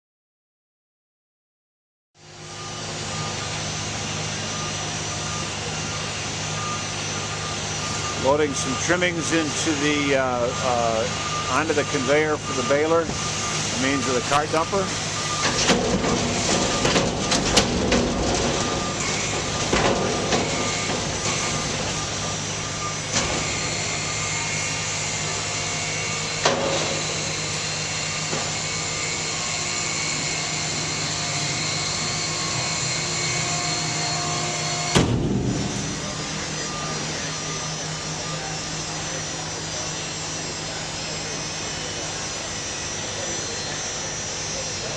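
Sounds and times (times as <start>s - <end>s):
conveyor humming: 2.2s - 44.9s
paper clattering onto conveyor: 15.4s - 21.5s.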